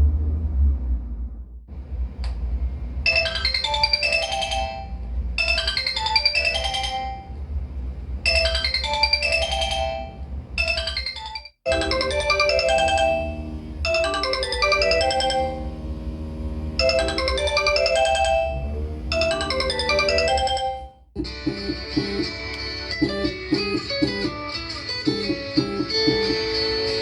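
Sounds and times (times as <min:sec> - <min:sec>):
steady low hum: 0:00.0 - 0:10.8, 0:11.7 - 0:24.5
busier ringtone melody: 0:03.1 - 0:07.4, 0:08.3 - 0:16.0, 0:16.6 - 0:26.8
phone ringtone melody: 0:03.1 - 0:07.4, 0:08.3 - 0:15.8, 0:16.8 - 0:21.0.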